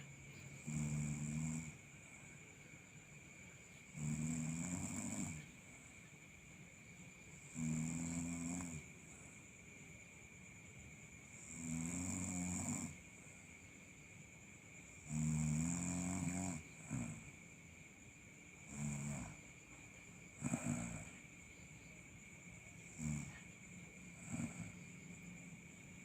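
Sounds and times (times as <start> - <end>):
cat snoring: 0.6 - 1.8, 3.9 - 5.5, 7.4 - 8.9, 11.3 - 13.0, 15.0 - 17.3, 18.6 - 19.4, 20.4 - 21.2, 22.9 - 23.5, 24.1 - 24.8.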